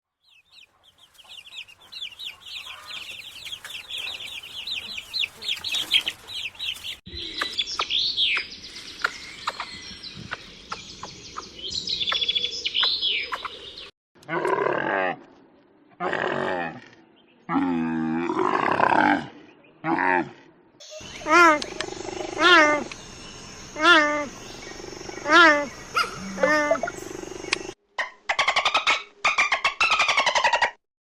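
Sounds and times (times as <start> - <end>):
chicks peeping: 0.2 - 8.4, 20.9 - 27.8
chickens clucking: 0.3 - 7.6, 20.9 - 27.8
harsh animal call: 0.5 - 7.0, 20.9 - 27.8.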